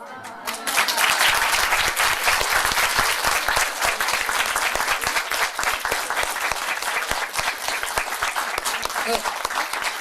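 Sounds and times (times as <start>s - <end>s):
audience applauding: 0.2s - 10.0s.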